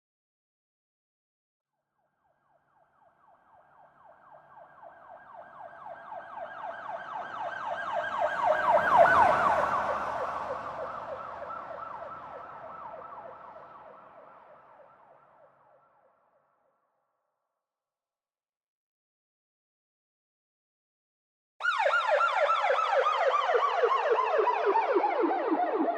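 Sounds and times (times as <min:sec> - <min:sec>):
police siren yelping: 0:04.1 - 0:13.8, 0:21.6 - 0:25.9.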